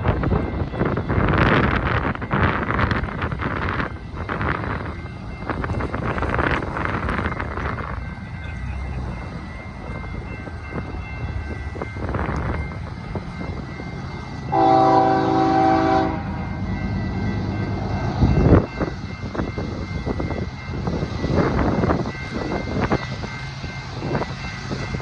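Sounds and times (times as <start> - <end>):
diesel locomotives rumbling: 0.0 - 25.0
multi-tone train horn: 14.5 - 16.7.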